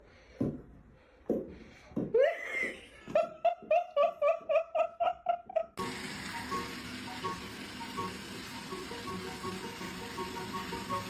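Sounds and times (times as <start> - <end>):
person laughing hard: 2.1 - 5.8
music: 5.8 - 11.0.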